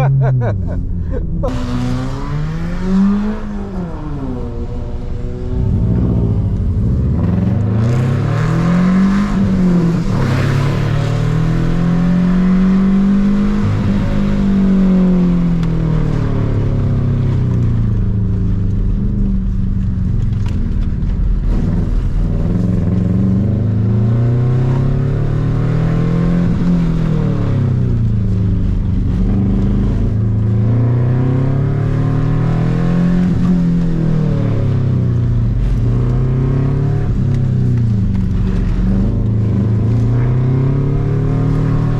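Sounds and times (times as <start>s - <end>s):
car engine accelerating and slowing: 0.0s - 41.9s.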